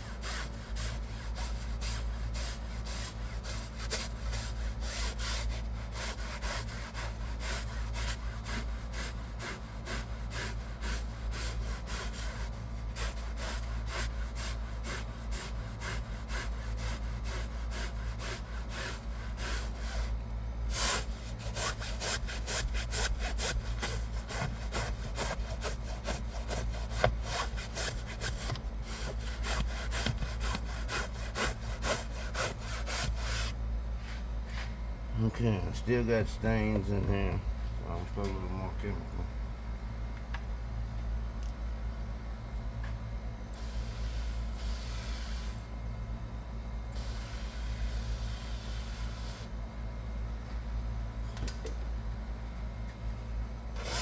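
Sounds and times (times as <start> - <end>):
steady low hum: 0.0 - 54.0
brush scrubbing fabric upholstery: 20.7 - 33.5.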